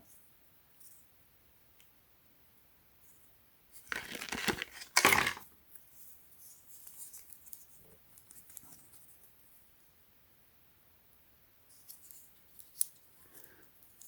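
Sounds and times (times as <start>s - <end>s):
light handling sounds: 3.8s - 5.4s
packaging tearing open: 3.9s - 5.4s.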